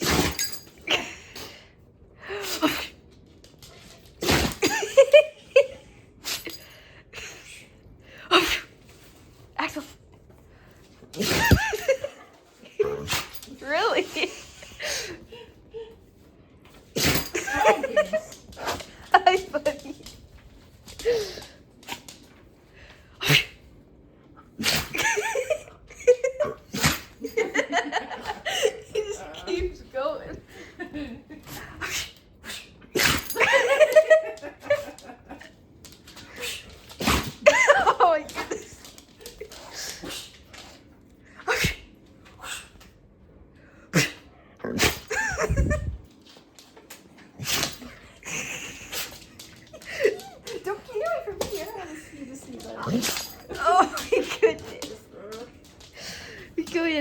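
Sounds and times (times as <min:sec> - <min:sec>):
dog sneezing: 0:00.0 - 0:00.6, 0:06.2 - 0:06.6, 0:11.2 - 0:11.9, 0:12.9 - 0:13.4, 0:17.0 - 0:17.5, 0:23.2 - 0:23.7, 0:24.6 - 0:25.2, 0:26.7 - 0:27.2, 0:31.7 - 0:33.4, 0:41.4 - 0:42.7, 0:43.9 - 0:45.1, 0:47.4 - 0:47.9.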